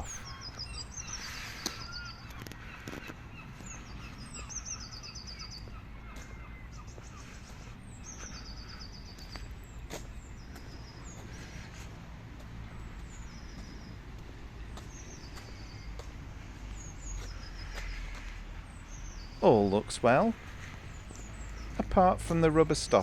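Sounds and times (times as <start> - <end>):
low outdoor rumble: 18.6 - 23.0.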